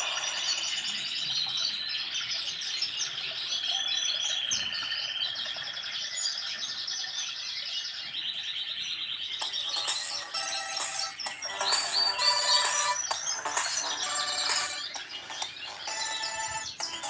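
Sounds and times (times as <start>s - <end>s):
chirping phone ringtone: 9.4s - 17.0s.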